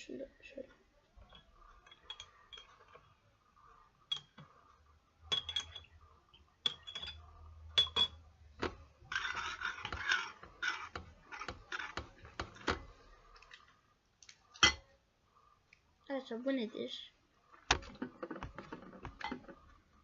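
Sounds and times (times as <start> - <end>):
spoon clinking against plate: 1.3 - 3.1, 5.3 - 6.0, 6.6 - 7.2, 7.8 - 8.2
rustling scrape: 9.0 - 12.7.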